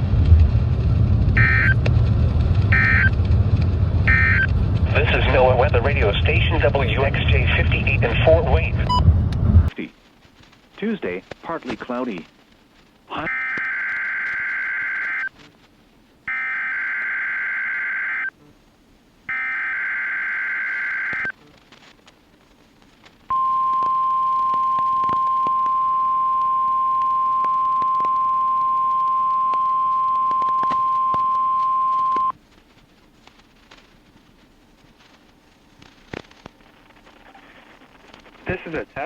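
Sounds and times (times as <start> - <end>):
faint static clicks: 0.0 - 39.0
harsh digital data bursts: 1.4 - 1.8
steady high alarm tone: 1.4 - 1.8, 2.7 - 3.1, 4.1 - 4.5.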